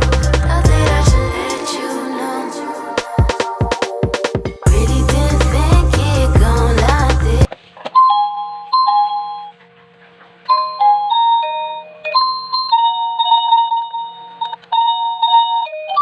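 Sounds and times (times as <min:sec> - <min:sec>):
doorbell chime melody: 0:08.0 - 0:09.5, 0:10.5 - 0:16.0.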